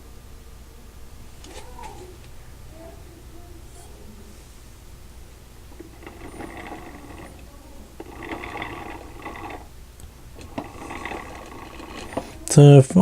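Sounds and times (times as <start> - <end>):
metal toy tractor clicking: 5.8 - 9.7, 10.4 - 12.6.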